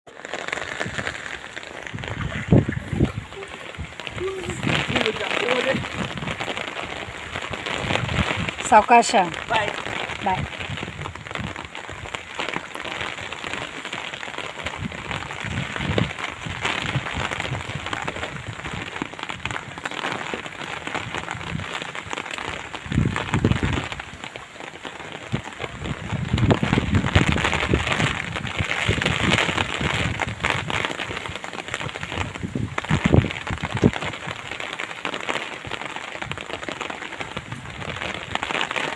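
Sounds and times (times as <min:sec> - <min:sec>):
crackly water noise: 0:00.0 - 0:38.9
low rumbling: 0:00.6 - 0:11.5.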